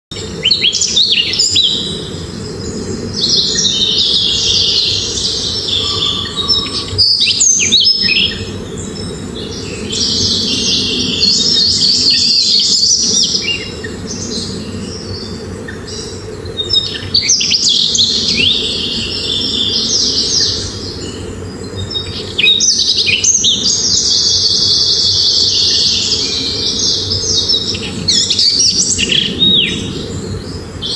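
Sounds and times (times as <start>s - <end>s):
finches chirping and twittering: 0.2s - 30.9s
steady low rumble: 0.2s - 30.9s.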